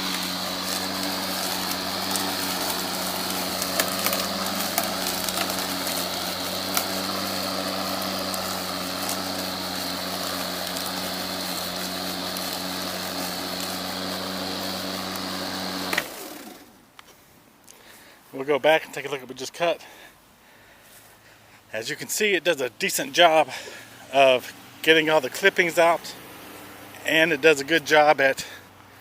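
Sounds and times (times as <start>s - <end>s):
electric lawn mower cutting grass: 0.0s - 16.9s, 23.4s - 28.6s.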